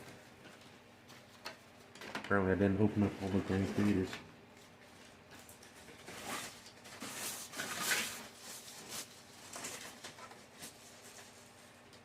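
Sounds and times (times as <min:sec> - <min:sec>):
foil packs crinkling: 0:05.0 - 0:11.9.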